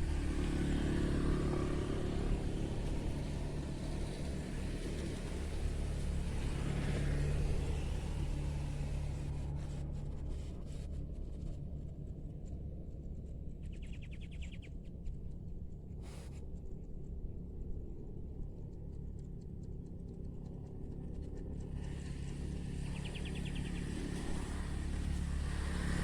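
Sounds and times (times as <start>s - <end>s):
motor vehicle passing: 21.6s - 26.0s.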